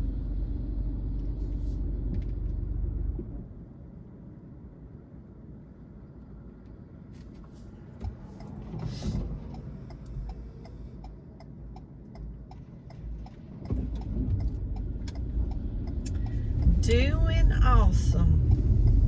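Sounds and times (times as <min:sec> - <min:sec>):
low rumble of engine and tyres: 0:00.0 - 0:19.0
turn signal ticking: 0:08.0 - 0:19.0.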